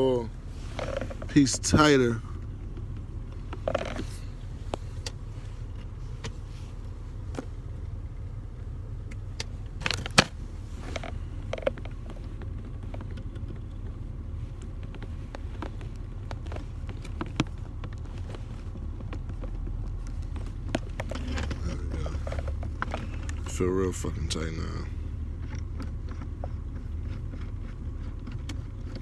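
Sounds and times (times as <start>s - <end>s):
steady low hum: 0.0s - 29.0s
shift knob clicks and knocks: 2.7s - 6.4s, 9.1s - 13.8s.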